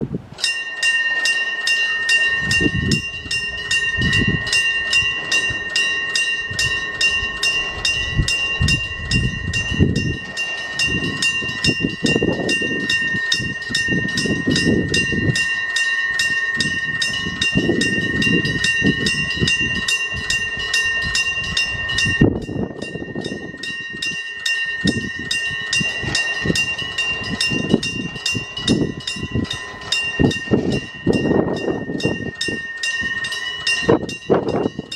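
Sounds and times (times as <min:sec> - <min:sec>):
train rumbling and wheel clatter: 0:00.0 - 0:34.9
level crossing alarm dinging: 0:00.4 - 0:34.9.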